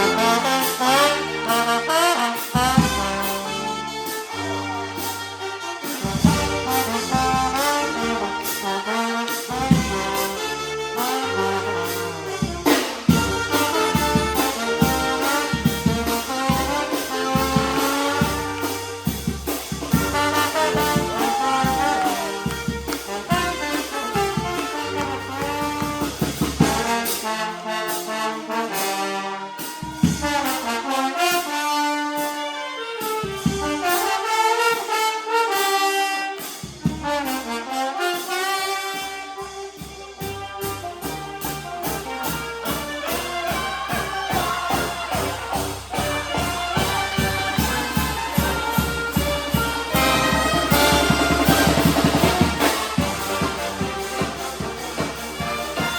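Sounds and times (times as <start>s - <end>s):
brass band playing dance tune: 0.0s - 55.9s
drum beat: 6.0s - 10.4s, 12.1s - 27.5s, 40.1s - 55.9s.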